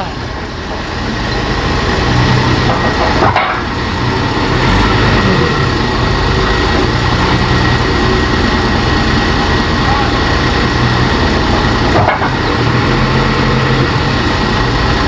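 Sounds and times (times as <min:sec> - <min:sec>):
heavy diesel machinery running: 0:00.0 - 0:15.0.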